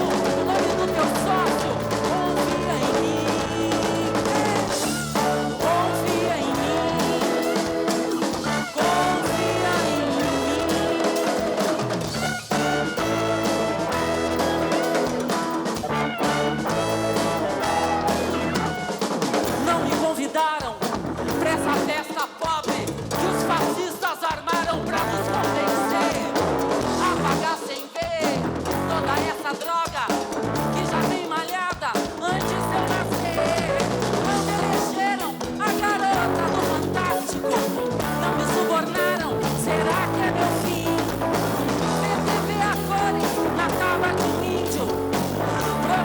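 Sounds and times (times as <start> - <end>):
live band music: 0.0 - 46.0.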